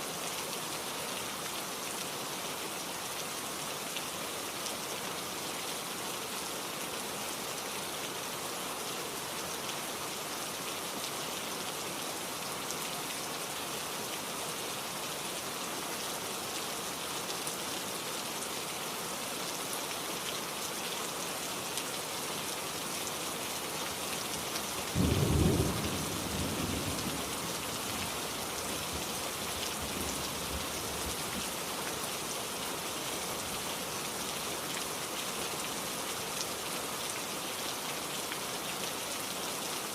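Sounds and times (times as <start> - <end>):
steady rain falling: 0.0 - 39.9
low thunderclap rumbling: 25.0 - 27.2.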